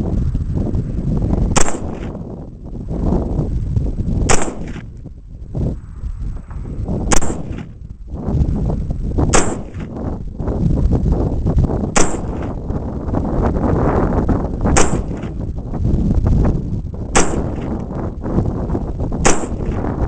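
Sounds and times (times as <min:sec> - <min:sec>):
low rumble: 0:00.0 - 0:20.0
rifle shots: 0:01.5 - 0:02.2, 0:04.3 - 0:04.9, 0:07.1 - 0:07.8, 0:09.3 - 0:10.0, 0:12.0 - 0:12.6, 0:14.7 - 0:15.4, 0:17.1 - 0:17.8, 0:19.2 - 0:20.0.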